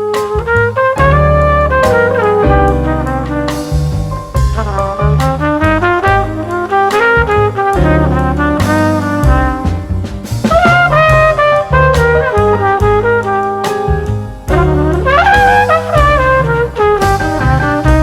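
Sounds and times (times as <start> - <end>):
upbeat brass jazz: 0.0 - 18.0.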